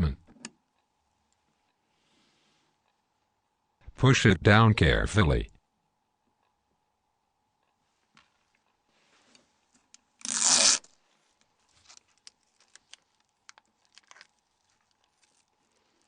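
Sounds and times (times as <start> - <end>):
plastic film tearing: 10.2 - 11.0, 11.7 - 15.6
small parts clicking and rustling: 11.4 - 16.0.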